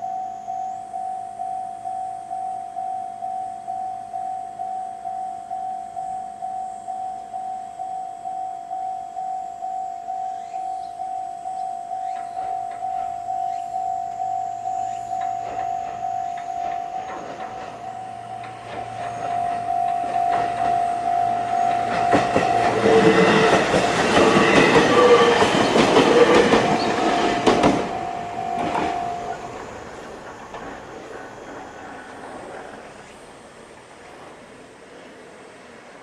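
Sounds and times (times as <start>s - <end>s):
electronic level-crossing bell: 0.0s - 29.6s
train wheels clattering over rails: 14.9s - 35.3s.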